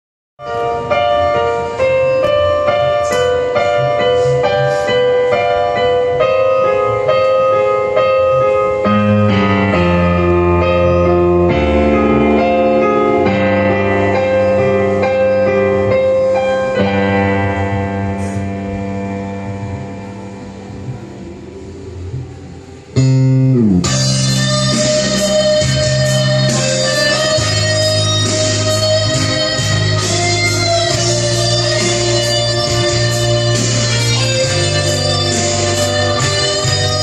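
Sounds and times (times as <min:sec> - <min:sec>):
keyboard playing slow melody: 0:00.4 - 0:37.0
deep bass line: 0:08.3 - 0:16.2, 0:16.8 - 0:37.0.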